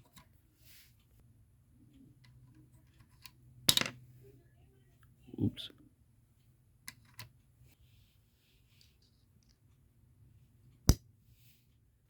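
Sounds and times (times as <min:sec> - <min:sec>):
light clicks and taps of tools: 0:08.8 - 0:09.8.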